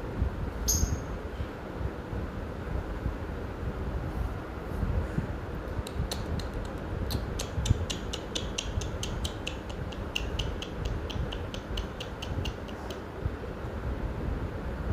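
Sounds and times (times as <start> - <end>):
parrot chirping: 0.7 - 1.1, 7.9 - 13.0.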